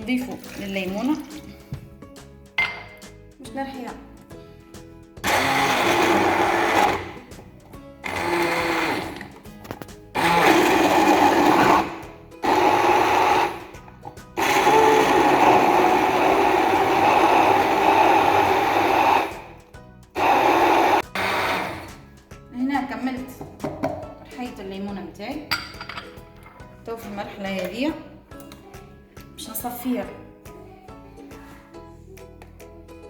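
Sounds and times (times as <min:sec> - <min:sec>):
electric blender running: 0:05.2 - 0:09.3, 0:10.2 - 0:13.8, 0:14.4 - 0:19.6, 0:20.2 - 0:22.0.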